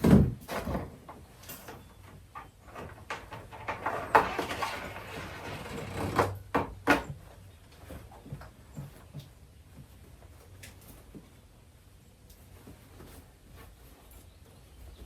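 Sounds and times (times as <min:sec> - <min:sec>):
rustling: 0:07.1 - 0:15.0.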